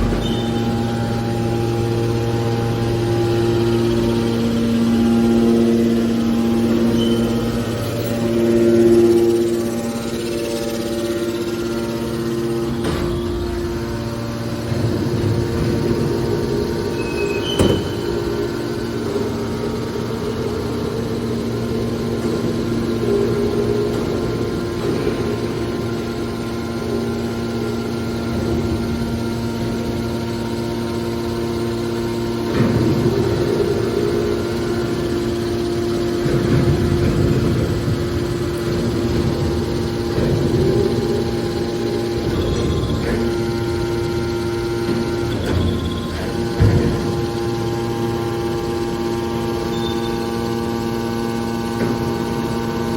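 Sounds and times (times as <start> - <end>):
baler machine hum: 0.0 - 52.9
loud grinding: 0.0 - 52.9.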